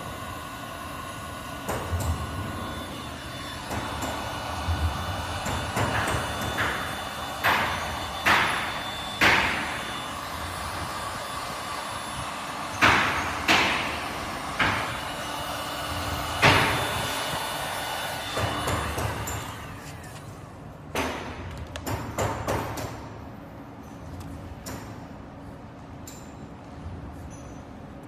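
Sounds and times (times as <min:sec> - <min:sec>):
steady background hum: 0:00.0 - 0:28.0
sharp ringing knocks: 0:05.4 - 0:10.0, 0:12.7 - 0:15.1.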